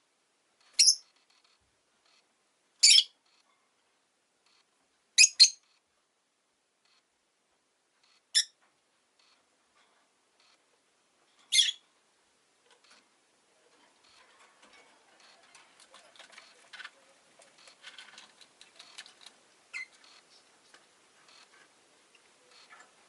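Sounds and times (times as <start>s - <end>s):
bird chirping sharply: 2.8s - 3.2s, 5.2s - 5.6s, 11.5s - 11.8s.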